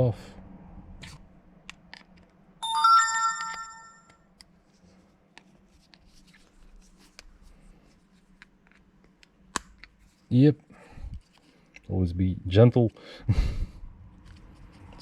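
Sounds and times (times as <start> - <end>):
electronic multi-tone chime: 2.6 - 4.1.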